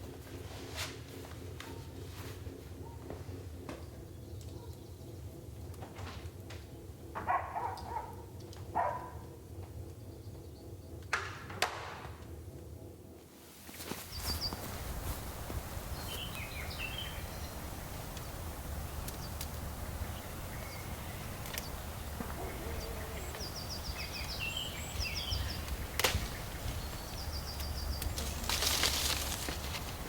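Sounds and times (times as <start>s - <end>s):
steady low rumble: 0.0s - 30.0s
small birds chirping: 2.8s - 5.8s, 13.9s - 30.0s.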